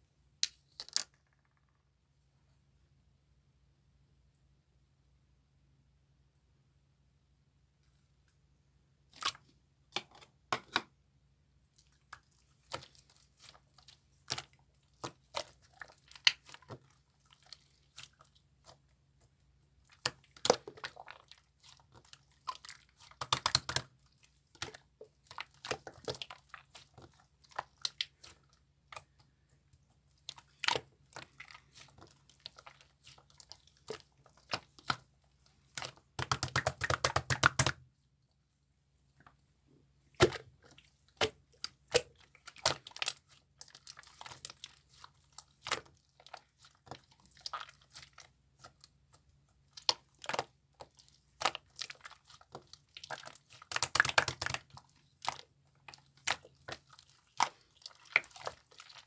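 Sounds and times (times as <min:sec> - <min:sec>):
slime squishing and popping: 0:19.9 - 0:29.2, 0:35.7 - 0:37.8, 0:49.7 - 0:59.0.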